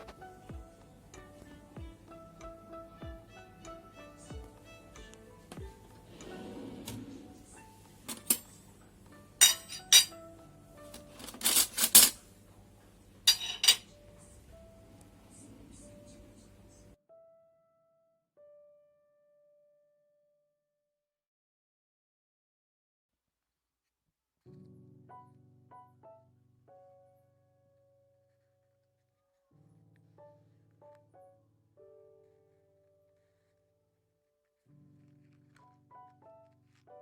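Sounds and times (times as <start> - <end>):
dishes and cutlery clinking: 8.1 - 8.6, 9.4 - 10.3, 10.9 - 12.3, 13.3 - 14.0.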